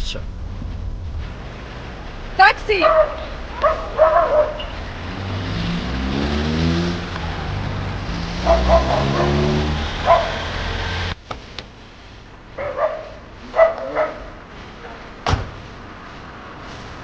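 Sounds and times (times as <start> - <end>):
car engine accelerating: 0.3 - 11.2
dog barking: 2.8 - 4.8, 8.4 - 10.5, 12.6 - 14.4.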